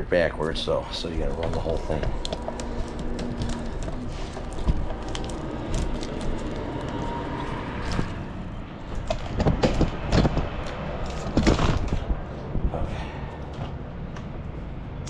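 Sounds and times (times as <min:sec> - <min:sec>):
wire stripper scraping insulation: 0:00.5 - 0:12.3.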